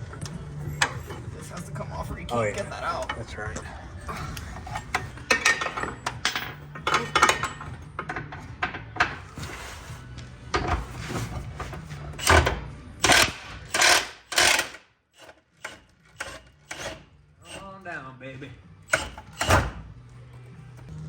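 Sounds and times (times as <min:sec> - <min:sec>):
impact wrench rattling: 0:12.2 - 0:17.0.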